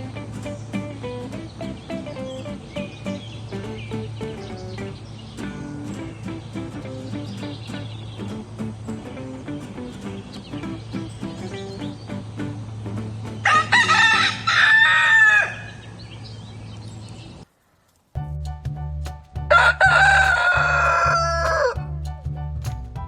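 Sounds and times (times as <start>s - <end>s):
background music: 0.0s - 14.8s, 18.2s - 23.0s
rooster crowing: 13.4s - 15.8s, 19.5s - 21.8s.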